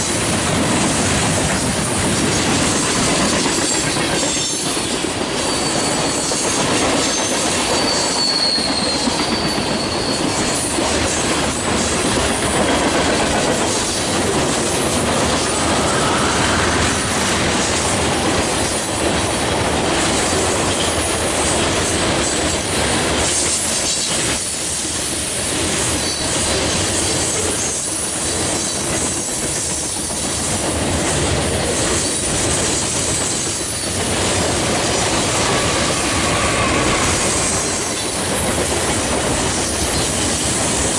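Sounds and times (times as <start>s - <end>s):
clickety-clack over rail joints: 0.0s - 40.9s
train wheels rumbling on rails: 0.0s - 40.9s
high wheel squeals: 5.4s - 10.8s, 13.8s - 18.6s, 33.6s - 38.7s.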